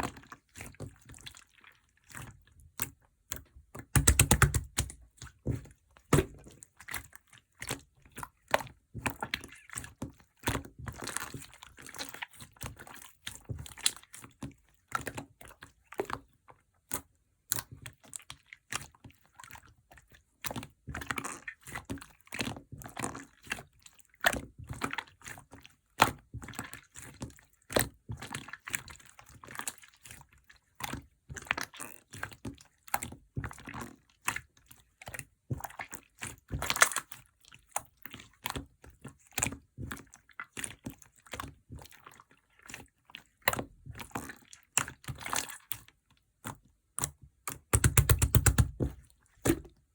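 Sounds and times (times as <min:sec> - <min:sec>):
slime squished by hand: 0:03.8 - 0:05.1, 0:47.5 - 0:49.8.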